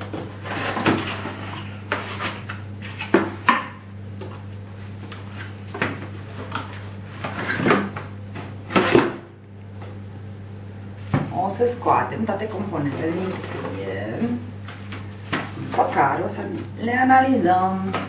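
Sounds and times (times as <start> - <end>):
cardboard rustling and scraping: 0.1 - 3.2, 4.8 - 9.2, 12.5 - 16.1.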